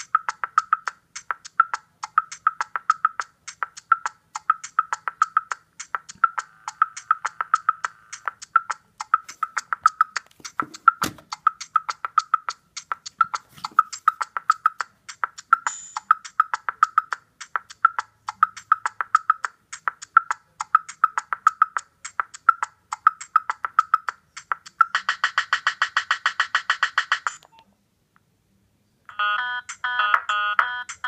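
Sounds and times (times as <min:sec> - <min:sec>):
ringtone of sharp ticks: 0:00.0 - 0:10.2, 0:11.3 - 0:27.6, 0:29.3 - 0:31.0
ringtone melody of beeping tones: 0:06.2 - 0:10.2, 0:15.6 - 0:17.1, 0:29.1 - 0:31.0.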